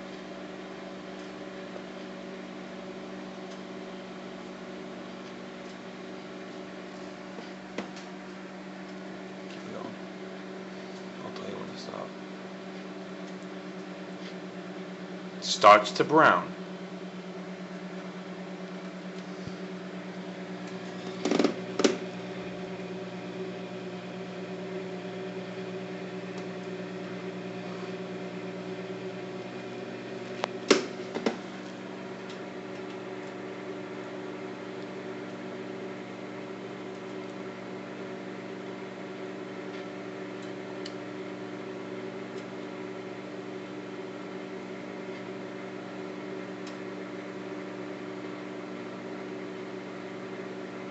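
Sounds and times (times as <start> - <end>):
microwave oven humming: 0.0 - 50.9.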